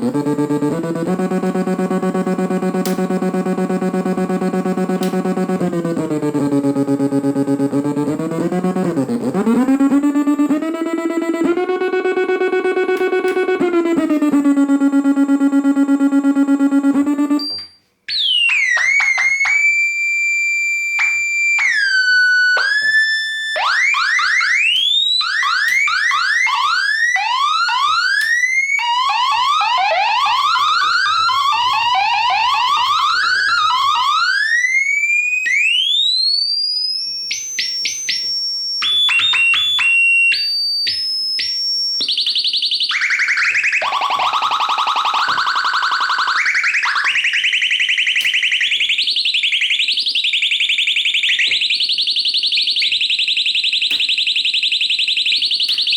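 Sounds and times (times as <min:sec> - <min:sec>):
synthesizer tones: 0:00.0 - 0:17.6, 0:28.8 - 0:34.5.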